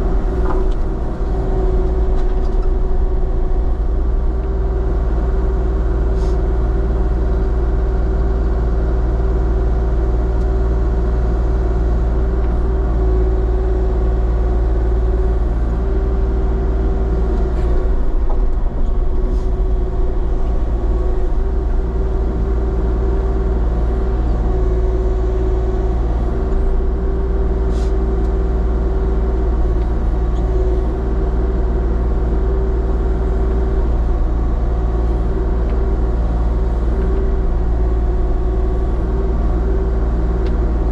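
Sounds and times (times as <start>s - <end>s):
diesel engine running: 0.0s - 40.9s.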